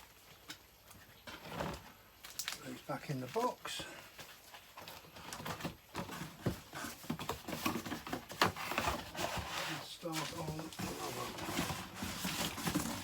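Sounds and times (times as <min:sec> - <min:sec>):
records knocking and scraping in box: 0:05.0 - 0:13.0.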